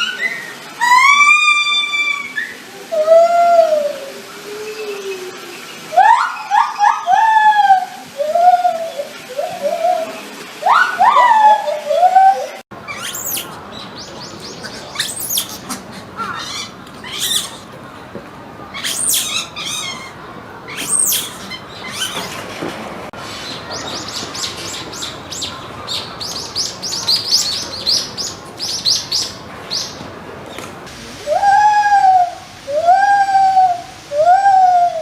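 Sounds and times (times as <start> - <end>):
monkey chirping calls: 0.0 - 5.3, 5.9 - 17.7, 18.7 - 22.4, 23.7 - 30.0.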